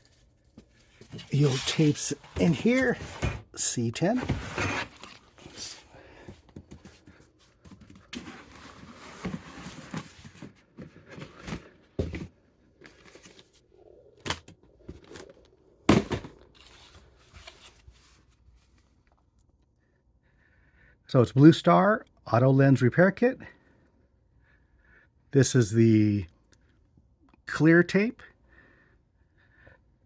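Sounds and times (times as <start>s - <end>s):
rustling and scraping: 0.0s - 13.7s, 16.3s - 18.9s.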